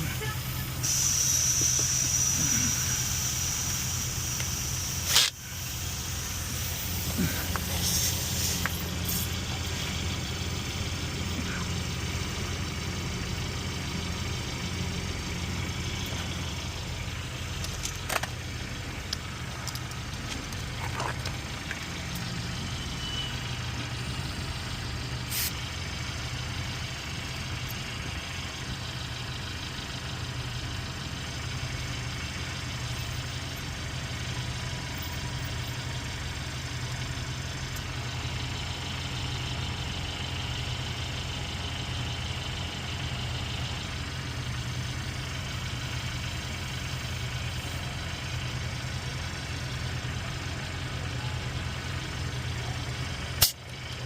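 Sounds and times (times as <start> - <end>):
engine idling: 0.0 - 54.0
short sharp clicks: 53.4 - 53.7.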